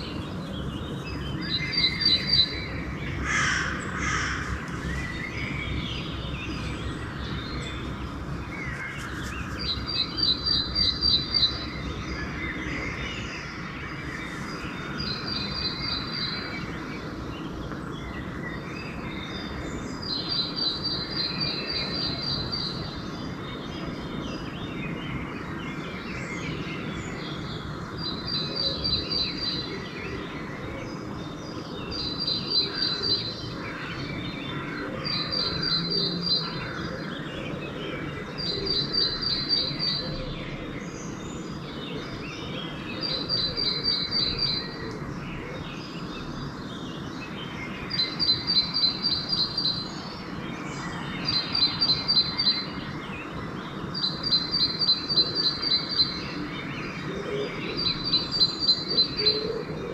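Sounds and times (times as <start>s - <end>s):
songbirds singing: 0.0s - 59.9s
crows cawing: 3.2s - 4.7s.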